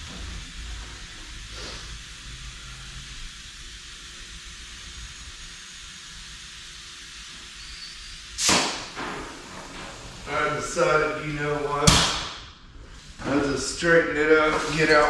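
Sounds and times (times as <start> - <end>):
steady hiss: 0.0 - 15.0
loud knock: 11.8 - 12.5.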